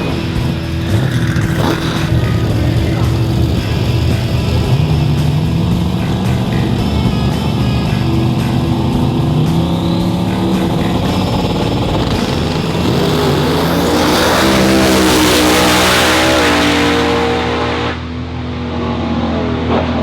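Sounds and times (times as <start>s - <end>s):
car engine running hard: 0.0s - 20.0s.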